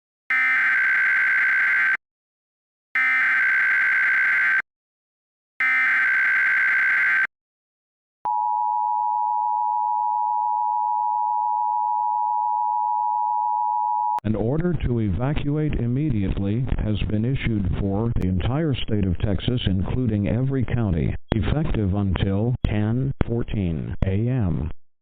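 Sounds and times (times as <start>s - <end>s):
steady two-tone attention signal: 0.3s - 2.0s, 3.0s - 4.6s, 5.6s - 7.3s
warbling digital data tones: 0.3s - 2.0s, 3.0s - 4.6s, 5.6s - 7.3s.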